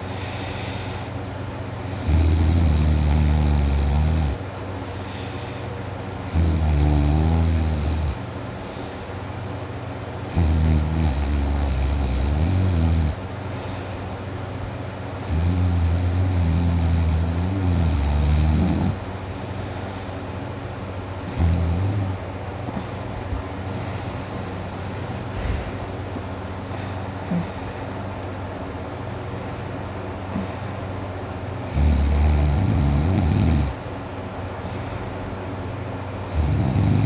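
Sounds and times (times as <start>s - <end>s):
man snoring loudly: 1.9s - 4.4s, 6.3s - 8.2s, 10.3s - 13.2s, 15.2s - 19.0s, 21.3s - 22.2s, 31.7s - 33.8s, 36.3s - 37.0s.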